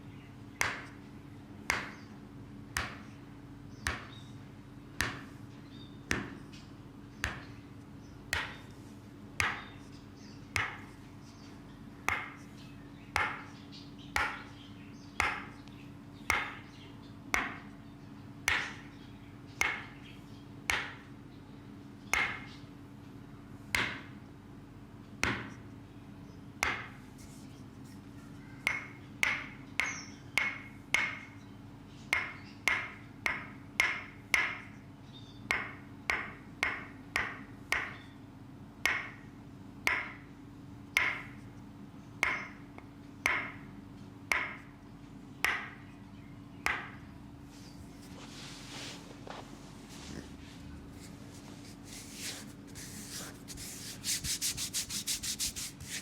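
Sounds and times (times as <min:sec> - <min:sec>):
faint steady hum: 0:00.0 - 0:56.0.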